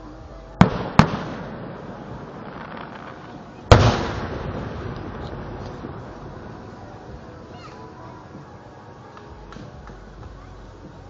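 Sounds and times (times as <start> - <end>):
rolling rumble: 0.0 - 11.0
fireworks booming: 0.6 - 8.6.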